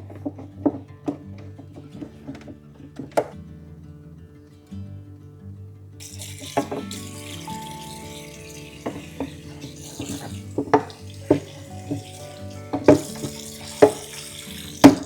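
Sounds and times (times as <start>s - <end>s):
soft background music: 0.0s - 4.3s, 5.8s - 15.0s
household items knocking and clinking: 8.8s - 15.0s.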